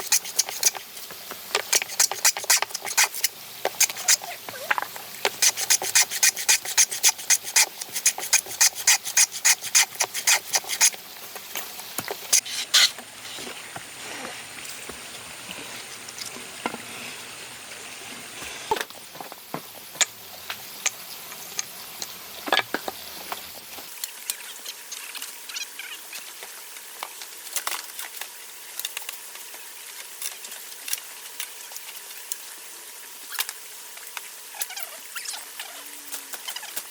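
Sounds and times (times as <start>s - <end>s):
hand tool working wood: 0.0s - 0.8s, 1.6s - 4.3s, 5.3s - 11.0s
scraping and rubbing: 0.0s - 0.9s, 1.6s - 4.7s, 5.3s - 11.4s, 12.2s - 14.3s.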